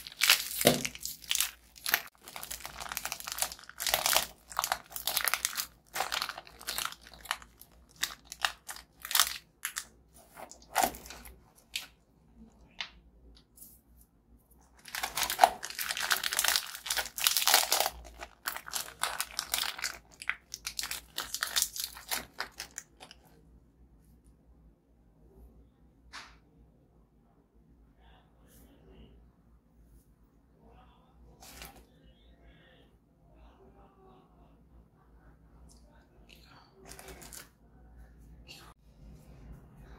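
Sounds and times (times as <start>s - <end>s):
biscuits crunching: 0.0s - 12.0s, 14.7s - 23.3s
plastic wrappers crinkling and tearing: 0.0s - 12.0s, 14.7s - 23.3s, 36.8s - 37.5s.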